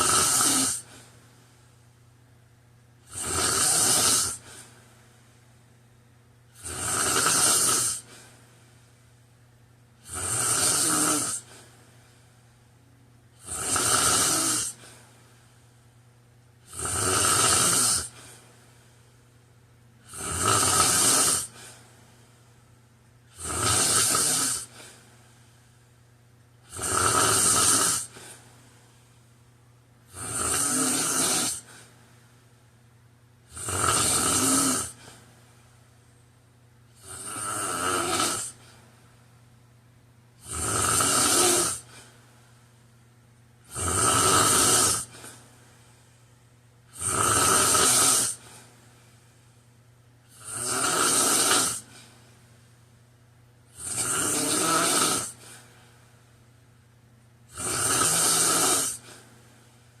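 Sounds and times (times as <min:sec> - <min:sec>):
man snoring: 0:00.0 - 0:01.0, 0:03.0 - 0:04.7, 0:06.5 - 0:08.2, 0:10.0 - 0:11.6, 0:13.4 - 0:14.9, 0:16.6 - 0:18.4, 0:20.0 - 0:21.8, 0:23.3 - 0:24.9, 0:26.7 - 0:28.4, 0:30.1 - 0:31.9, 0:33.5 - 0:35.2, 0:37.0 - 0:38.6, 0:40.4 - 0:42.1, 0:43.7 - 0:45.4, 0:46.9 - 0:48.6, 0:50.3 - 0:52.0, 0:53.7 - 0:55.6, 0:57.5 - 0:59.2.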